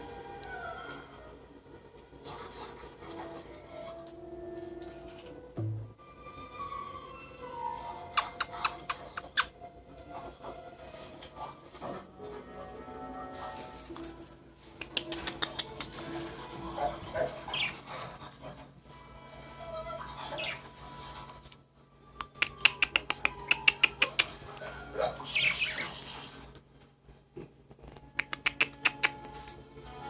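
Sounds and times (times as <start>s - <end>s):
birds squawking and chirping: 15.0s - 18.6s, 19.5s - 21.4s, 22.4s - 26.4s.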